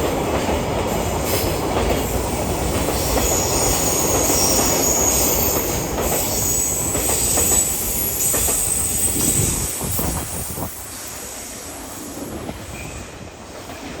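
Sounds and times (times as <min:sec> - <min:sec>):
train wagons rumbling past: 0:00.0 - 0:14.0
high wheel squeal: 0:03.2 - 0:11.6.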